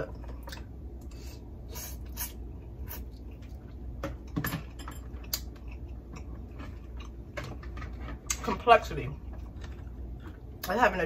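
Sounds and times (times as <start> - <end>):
chewing smacks: 5.2 - 7.3.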